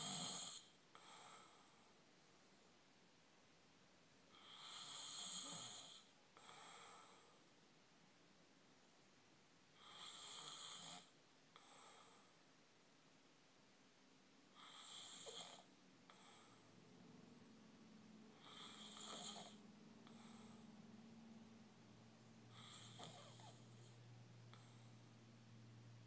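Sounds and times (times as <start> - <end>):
person snoring faintly: 0.0 - 2.0, 4.3 - 7.4, 9.8 - 12.4, 14.5 - 16.8, 18.3 - 21.0, 22.5 - 25.1
soft breath: 0.0 - 2.7, 5.9 - 7.6, 11.5 - 12.5, 16.0 - 17.0, 18.3 - 25.2
low steady hum: 15.6 - 26.0.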